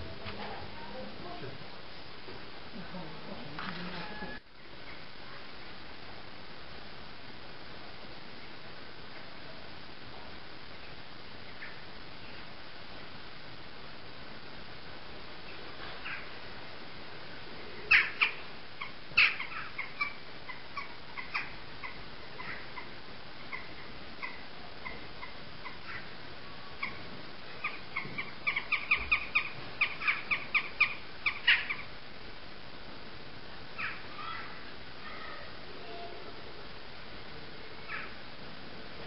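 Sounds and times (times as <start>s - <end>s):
jackdaws calling: 15.5s - 16.5s, 17.6s - 32.1s, 33.7s - 35.5s, 37.8s - 38.2s.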